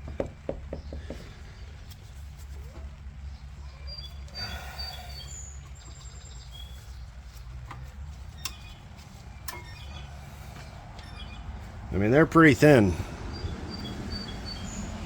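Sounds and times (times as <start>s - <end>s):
birds chirping: 3.2s - 15.0s.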